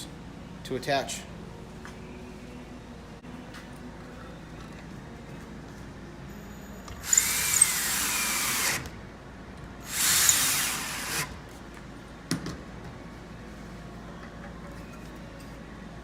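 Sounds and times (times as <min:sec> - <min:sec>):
power drill driving screws into wood: 0:07.0 - 0:08.9, 0:09.9 - 0:11.4.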